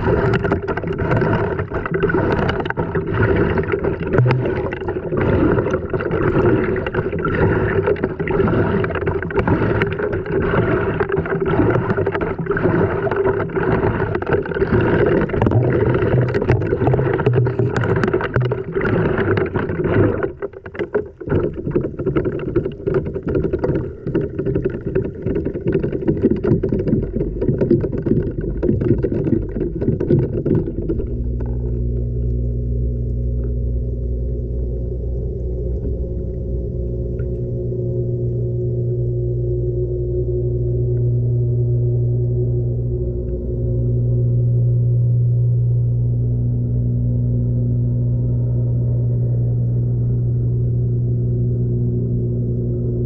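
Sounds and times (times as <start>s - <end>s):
washing machine water sloshing: 0.0s - 31.6s.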